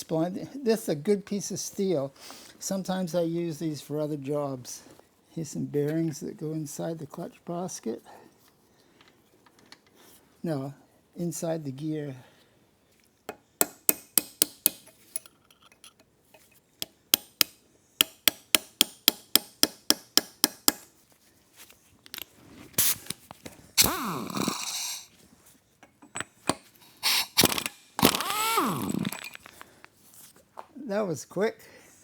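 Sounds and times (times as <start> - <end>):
power tool bursts winding down: 23.8 - 25.1, 27.0 - 29.6.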